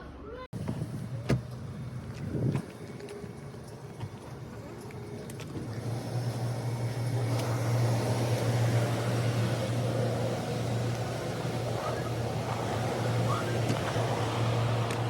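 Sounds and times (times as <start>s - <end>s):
low mechanical drone with hiss: 0.6s - 15.0s.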